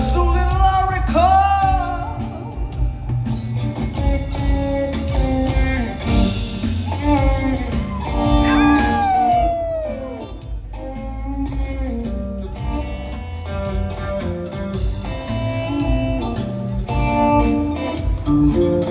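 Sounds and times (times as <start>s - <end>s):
live rock band playing: 0.0s - 18.9s
electric guitar bending notes: 2.7s - 12.9s.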